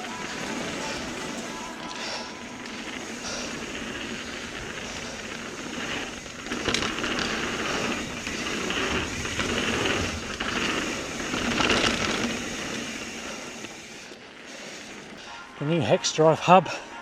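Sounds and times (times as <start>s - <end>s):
tyre noise on dirt trail: 0.0s - 17.0s
bike hub ratcheting buzz: 0.1s - 15.2s.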